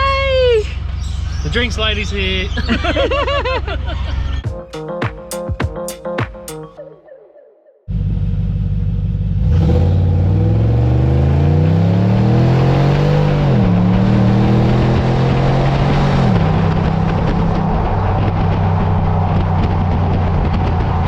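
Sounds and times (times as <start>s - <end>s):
car engine accelerating hard: 7.9s - 21.0s.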